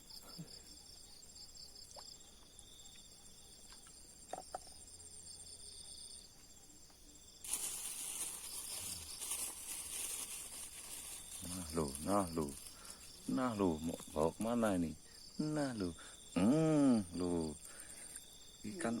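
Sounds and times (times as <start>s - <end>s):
insects trilling: 0.0s - 19.0s
loud steady hiss: 7.4s - 16.2s.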